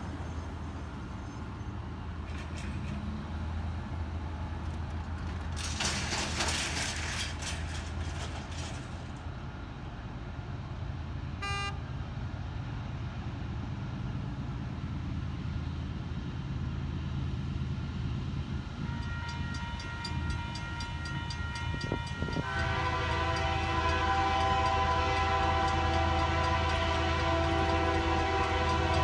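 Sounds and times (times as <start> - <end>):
diesel locomotive rumbling: 0.0 - 29.0
train air horn: 11.4 - 11.8, 18.8 - 29.0.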